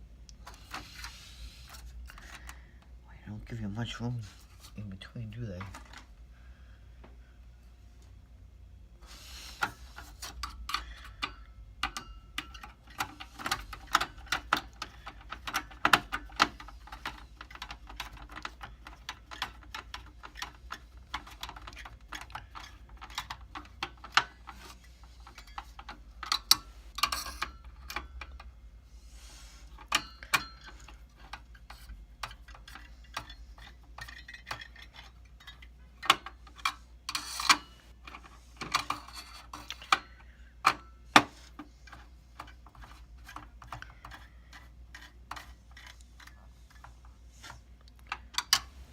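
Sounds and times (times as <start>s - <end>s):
low steady hum: 0.0s - 48.9s
metal and plastic parts clicking: 9.6s - 28.6s, 29.7s - 48.9s.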